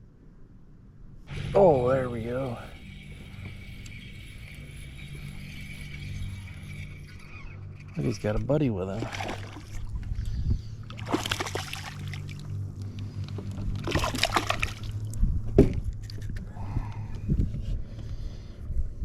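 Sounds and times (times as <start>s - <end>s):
steady low hum: 0.0s - 19.0s
fish splashing at water surface: 9.0s - 10.0s, 10.9s - 12.5s, 13.8s - 15.1s.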